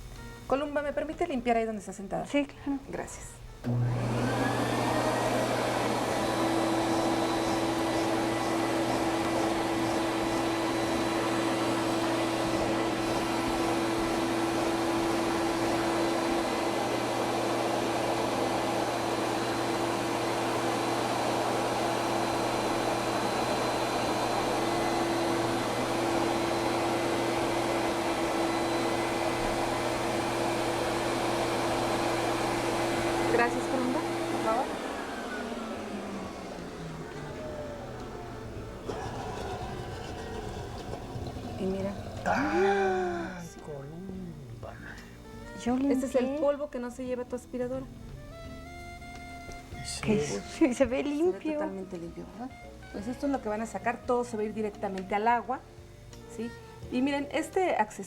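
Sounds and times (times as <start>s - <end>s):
vacuum cleaner motor whine: 3.6s - 44.4s.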